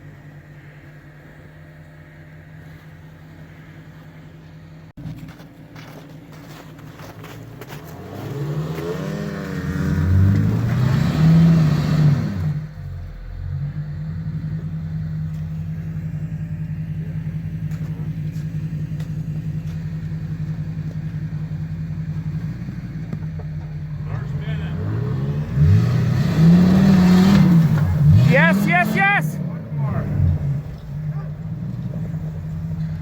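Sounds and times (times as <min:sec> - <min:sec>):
truck engine revving: 0:07.0 - 0:33.0.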